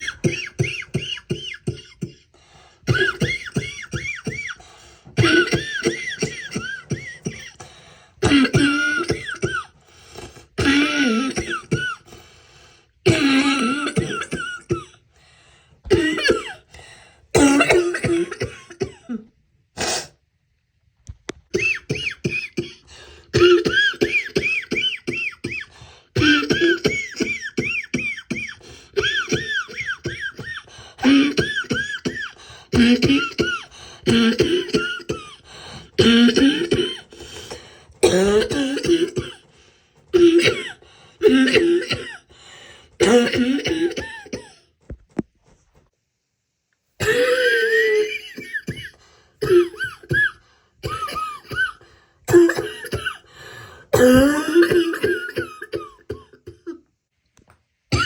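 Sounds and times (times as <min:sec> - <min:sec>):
woman coughing: 0:00.0 - 0:09.8, 0:10.4 - 0:12.1, 0:13.0 - 0:15.0, 0:15.9 - 0:20.2, 0:21.5 - 0:39.5, 0:40.1 - 0:42.3, 0:42.9 - 0:44.7, 0:47.0 - 0:56.9.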